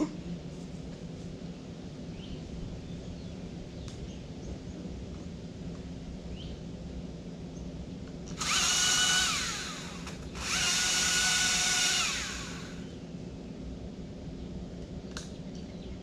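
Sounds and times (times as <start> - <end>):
chainsaw motor whine: 8.3 - 12.9.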